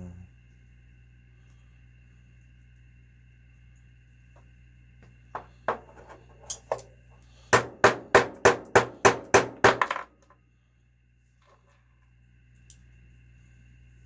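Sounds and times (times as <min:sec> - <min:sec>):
hammer striking metal: 0:07.5 - 0:10.0.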